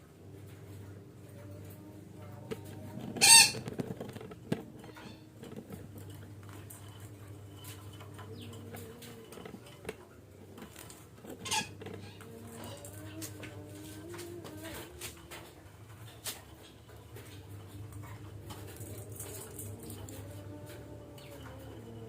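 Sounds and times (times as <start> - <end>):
faint low hum: 0.0 - 22.0
parakeet squawking: 3.2 - 3.7, 11.4 - 12.2.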